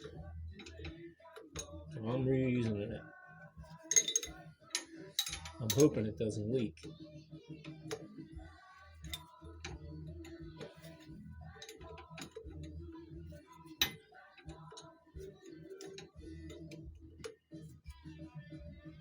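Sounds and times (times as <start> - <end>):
background music: 0.0 - 19.0
wrench clicking on metal fittings: 3.9 - 6.0, 11.6 - 12.8, 13.7 - 14.9.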